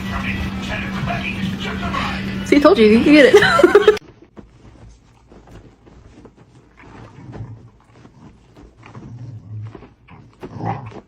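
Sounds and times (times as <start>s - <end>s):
dog growling: 6.8s - 11.0s.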